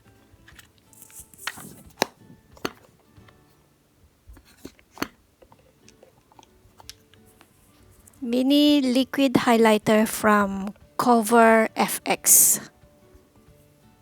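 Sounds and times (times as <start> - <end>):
faint background music: 0.0 - 14.0
cases clicking and tapping: 0.4 - 3.4.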